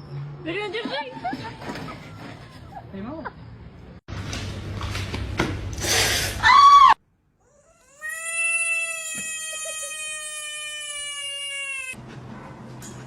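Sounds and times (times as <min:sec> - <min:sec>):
cat yowling: 0:07.6 - 0:12.0.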